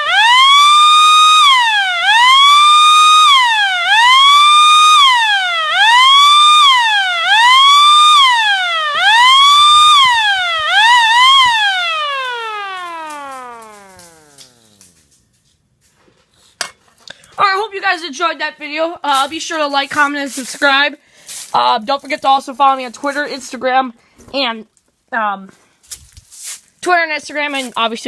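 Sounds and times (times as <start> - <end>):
air raid siren rising and falling: 0.0 - 15.0.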